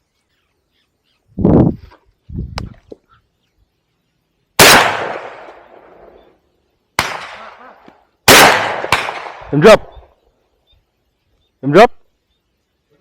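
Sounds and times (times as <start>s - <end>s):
shotgun shots echoing: 4.6s - 6.2s, 7.0s - 10.0s.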